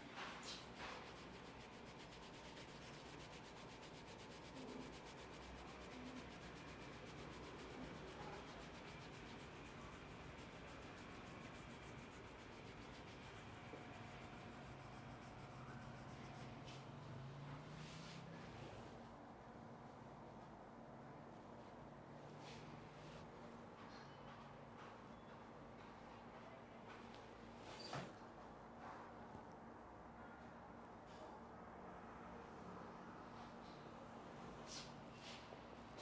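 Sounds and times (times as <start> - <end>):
hands rubbing hair and scalp: 0.2 - 16.8.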